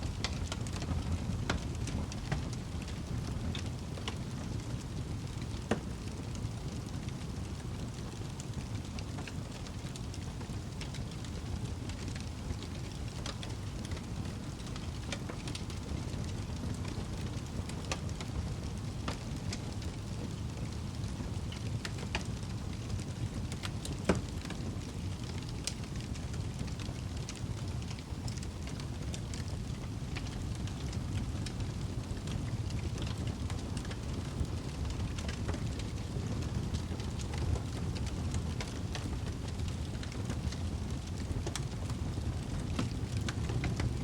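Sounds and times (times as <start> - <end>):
wood fire crackling: 0.0 - 44.0.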